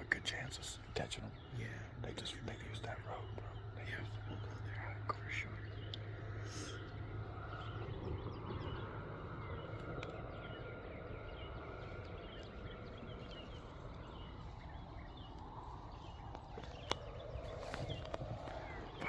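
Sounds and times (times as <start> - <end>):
birds or insects chirping: 0.0 - 19.0
steady low rumble: 0.0 - 19.0
faint clicks: 9.8 - 10.2, 16.1 - 19.0.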